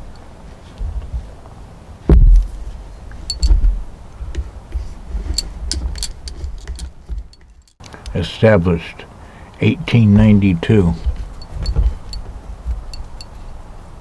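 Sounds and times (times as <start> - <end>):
heavy thump: 2.1 - 7.4, 10.1 - 13.3
light clicks and clinks: 3.2 - 3.7, 4.8 - 8.1, 11.0 - 13.5.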